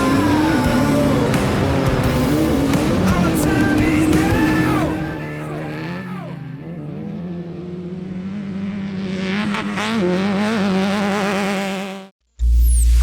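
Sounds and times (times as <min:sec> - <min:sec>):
race car engine revving: 0:00.0 - 0:12.1.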